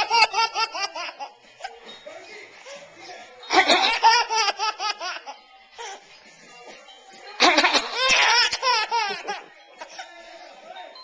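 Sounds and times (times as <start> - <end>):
baby giggling: 0.0 - 1.8, 3.6 - 5.4, 7.4 - 10.2.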